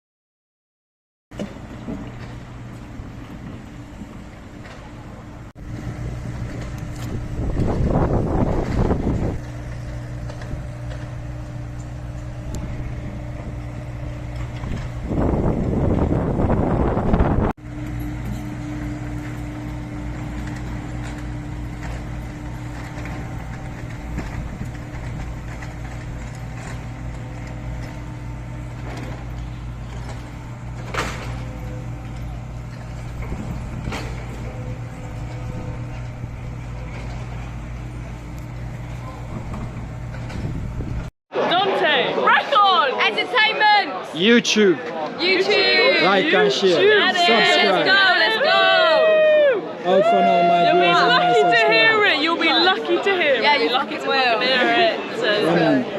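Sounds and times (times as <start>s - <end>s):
heavy diesel engine running: 1.3s - 41.1s.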